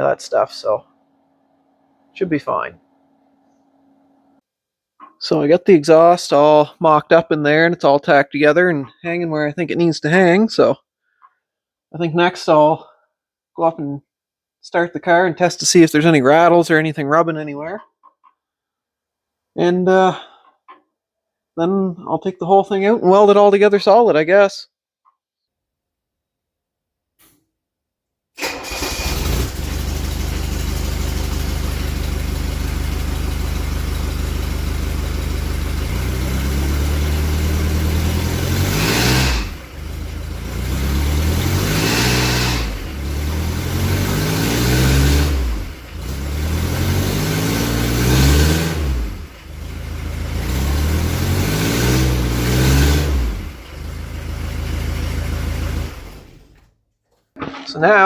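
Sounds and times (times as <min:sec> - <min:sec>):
diesel engine idling and revving: 0:28.8 - 0:56.6.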